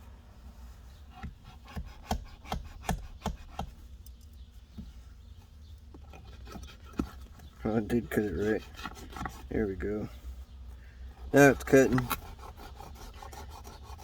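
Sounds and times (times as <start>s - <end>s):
knife sawing and scraping: 0.5s - 3.8s, 5.4s - 10.1s, 11.1s - 14.0s.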